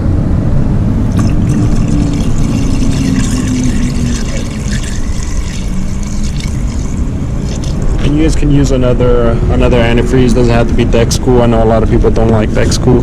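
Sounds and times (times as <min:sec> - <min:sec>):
heavy low rumble: 0:00.0 - 0:13.0
liquid pouring and splashing: 0:01.1 - 0:08.0.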